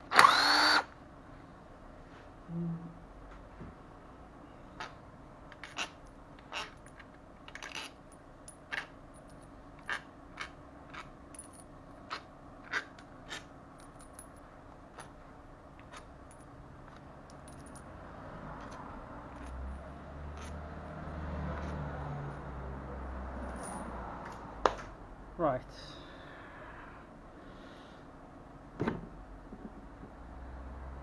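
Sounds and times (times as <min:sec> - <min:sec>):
metal bolts and tools clinking: 0:04.8 - 0:17.9, 0:18.6 - 0:20.6.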